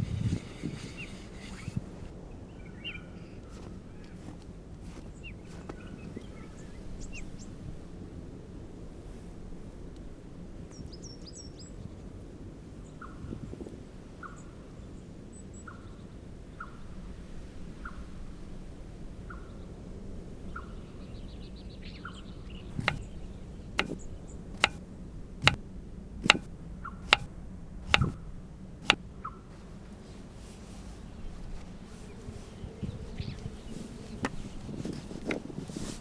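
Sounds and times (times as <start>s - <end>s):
sharp knocks: 22.7s - 23.0s, 24.6s - 24.8s, 26.2s - 26.5s, 27.1s - 27.3s, 27.9s - 28.2s.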